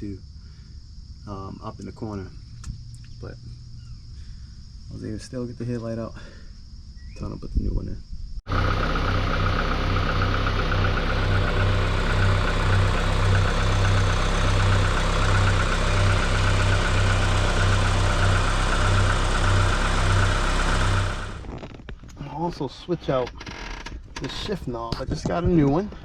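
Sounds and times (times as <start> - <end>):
car engine running: 8.5 - 21.9.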